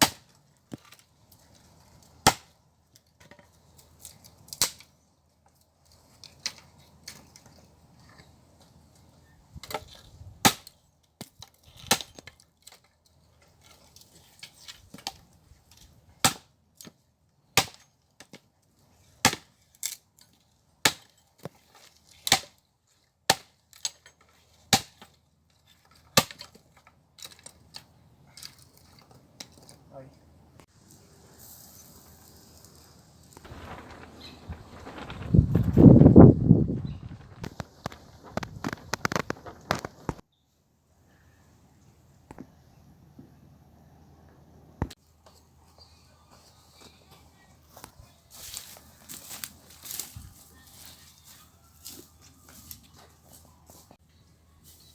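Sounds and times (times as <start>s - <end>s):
axe chopping firewood: 0.0s - 1.0s, 2.2s - 2.6s, 4.1s - 4.9s, 9.6s - 12.9s, 16.2s - 18.5s, 19.2s - 20.0s, 20.8s - 22.6s, 23.2s - 25.2s, 25.8s - 27.5s.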